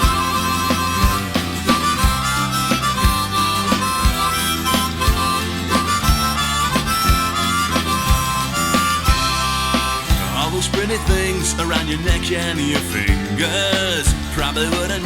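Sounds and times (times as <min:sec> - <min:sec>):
harmonica long held notes: 0:00.0 - 0:12.0
instrumental band music: 0:00.0 - 0:15.0.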